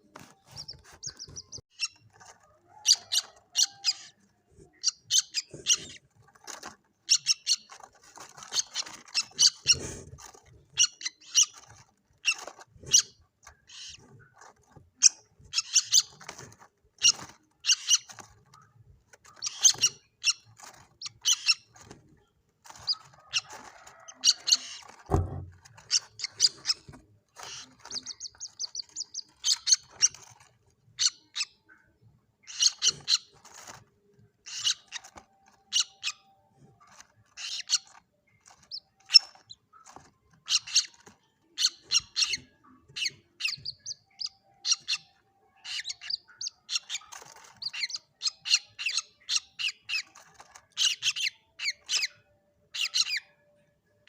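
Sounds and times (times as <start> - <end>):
chicks peeping: 0.0 - 53.9
low thump: 25.1 - 25.6.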